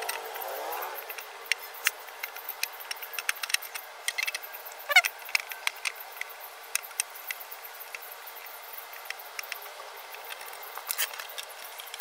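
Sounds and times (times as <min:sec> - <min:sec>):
clicks and taps of handling parts: 0:01.0 - 0:08.1.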